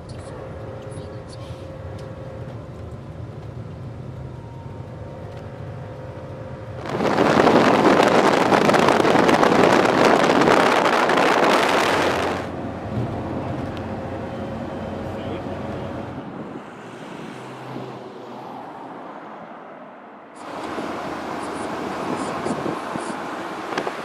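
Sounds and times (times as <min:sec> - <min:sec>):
vehicle hum: 0:00.0 - 0:24.0
loud rushing noise: 0:06.8 - 0:13.6.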